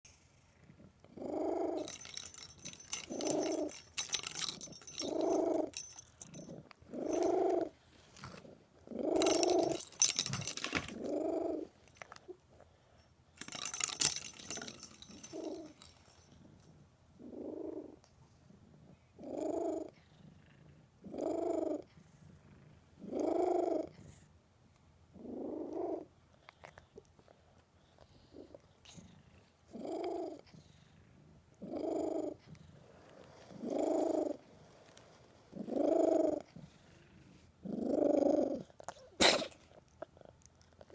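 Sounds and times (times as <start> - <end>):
cat purring: 0.1 - 24.4, 25.1 - 40.9
toy ball bells jingling: 1.8 - 7.6, 9.2 - 11.2, 13.4 - 16.7.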